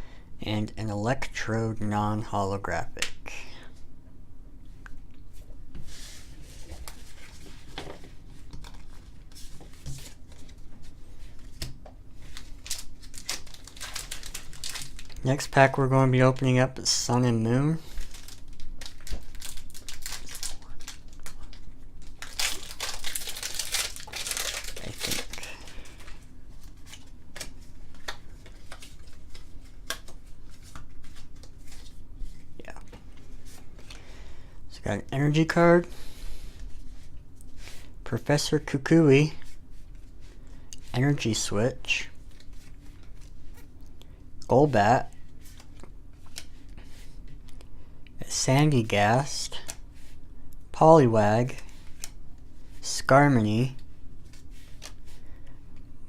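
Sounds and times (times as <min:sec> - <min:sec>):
cards and packaging rustling: 0:06.6 - 0:16.4, 0:17.8 - 0:34.0.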